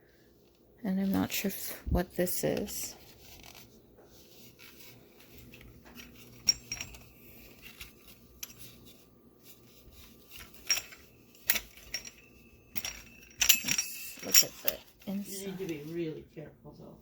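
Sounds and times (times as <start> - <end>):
toy parts clinking and tapping: 10.3 - 14.9.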